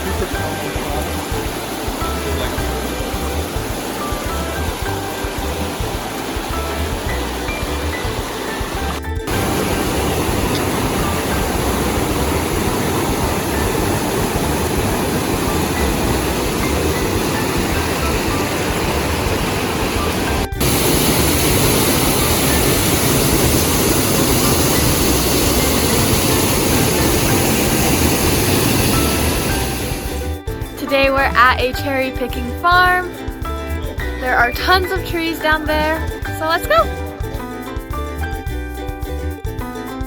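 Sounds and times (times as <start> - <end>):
waterfall roaring: 0.0 - 30.2.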